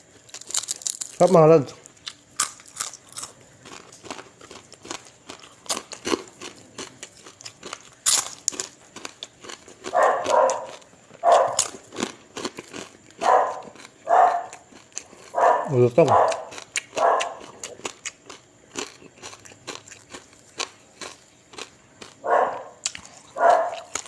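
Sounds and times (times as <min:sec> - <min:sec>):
chewing and crunching fried fish: 0:00.0 - 0:24.0
dog barking: 0:09.8 - 0:11.7, 0:13.2 - 0:14.6, 0:15.2 - 0:17.5, 0:22.2 - 0:24.0.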